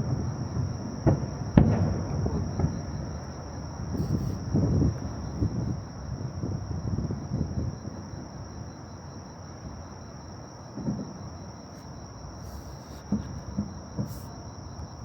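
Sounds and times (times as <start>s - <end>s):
crickets trilling: 0.0s - 15.0s.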